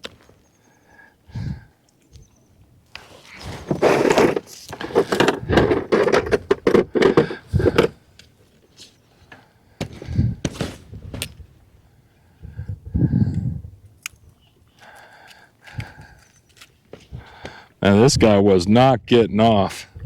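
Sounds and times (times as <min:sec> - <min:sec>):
knocks and thumps on kayak: 0:03.6 - 0:08.0.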